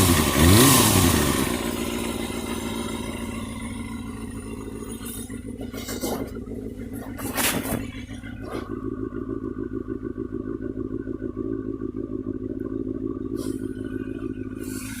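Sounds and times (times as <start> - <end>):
motorcycle engine idling: 0.0 - 15.0
hiss: 13.4 - 13.8, 14.6 - 15.0.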